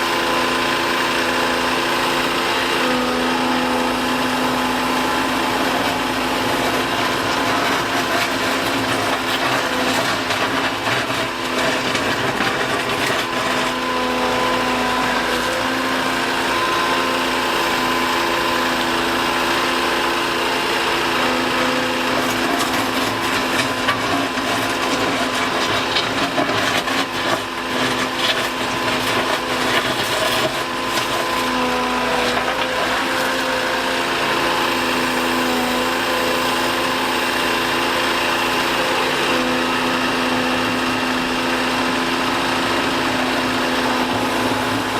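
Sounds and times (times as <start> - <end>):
excavator engine humming and whining: 0.0 - 44.9
bucket scraping asphalt: 0.9 - 44.9.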